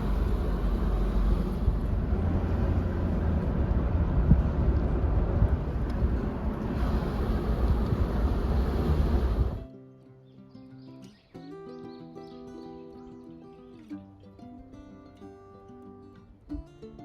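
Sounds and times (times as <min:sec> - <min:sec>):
low rumbling noise: 0:00.0 - 0:09.6.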